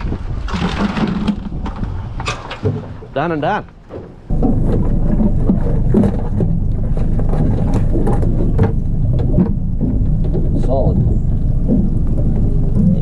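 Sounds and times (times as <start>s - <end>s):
outboard motor running: 4.0s - 13.0s.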